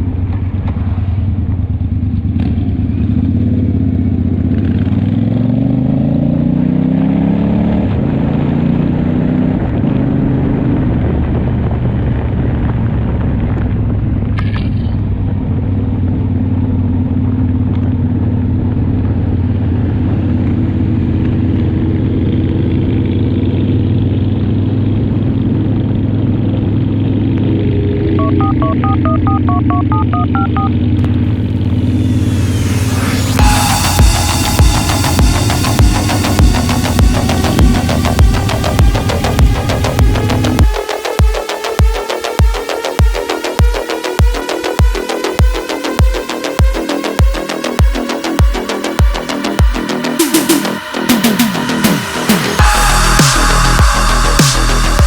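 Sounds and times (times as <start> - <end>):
motorcycle engine accelerating: 0.0 - 14.4, 15.1 - 55.0
beeping tones: 28.2 - 38.4.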